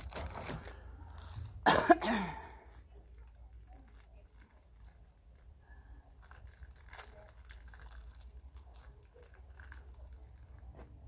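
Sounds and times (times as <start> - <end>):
person coughing: 1.6 - 2.6.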